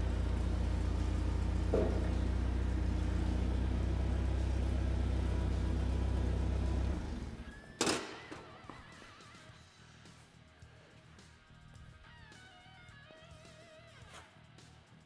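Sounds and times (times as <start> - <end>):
machine humming: 0.0 - 8.0.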